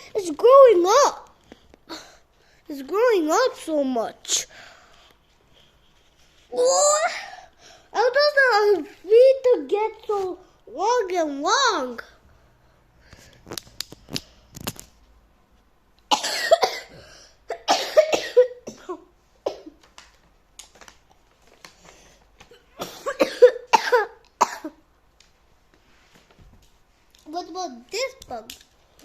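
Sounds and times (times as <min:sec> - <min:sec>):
person coughing: 0:16.1 - 0:19.8, 0:22.5 - 0:24.8.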